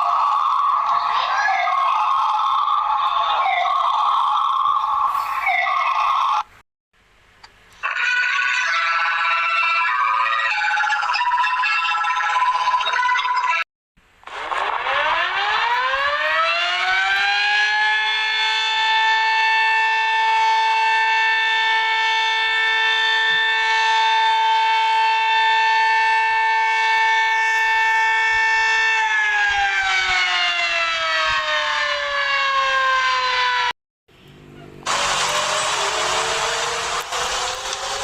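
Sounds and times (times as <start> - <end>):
civil defense siren wailing: 0.0 - 6.5, 14.6 - 33.8, 34.8 - 38.0.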